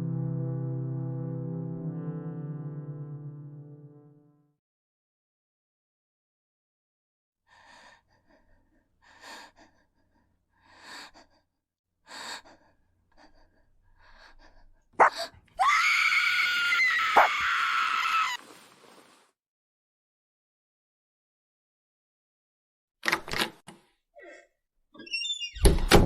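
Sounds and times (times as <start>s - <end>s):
high-pitched scream: 15.6s - 18.4s.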